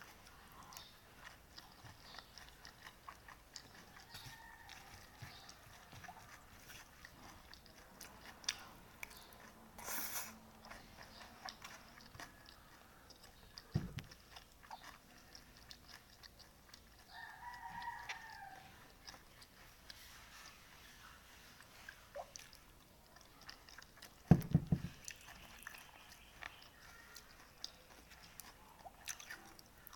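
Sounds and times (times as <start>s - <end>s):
chewing: 0.0s - 29.9s
rooster crowing: 4.0s - 5.5s, 17.1s - 18.7s
dull thump: 13.8s - 14.1s, 24.3s - 25.0s.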